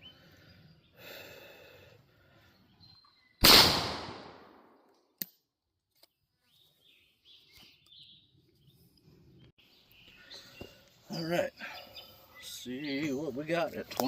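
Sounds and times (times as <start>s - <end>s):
shotgun shot with echo: 3.4s - 4.7s.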